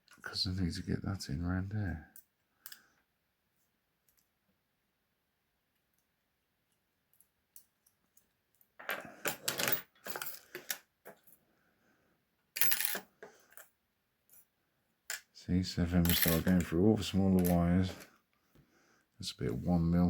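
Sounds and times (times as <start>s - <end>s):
small metal pieces clinking: 12.6s - 13.7s, 16.0s - 16.6s.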